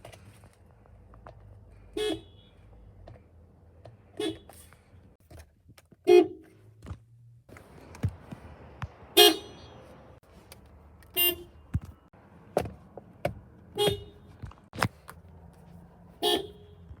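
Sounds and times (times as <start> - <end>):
car horn beeps: 1.9 - 2.6, 4.2 - 4.7, 6.0 - 6.5, 9.1 - 10.1, 11.1 - 11.8, 13.7 - 14.4, 16.2 - 17.0.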